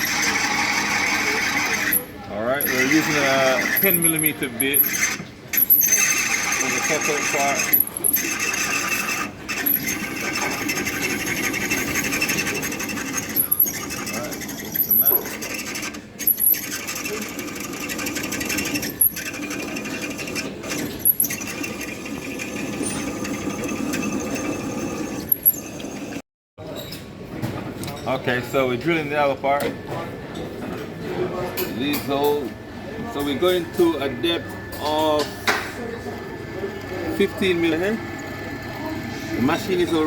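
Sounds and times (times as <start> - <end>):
drill motor whine grinding steel: 0.0 - 26.2, 33.2 - 35.4, 36.1 - 40.0.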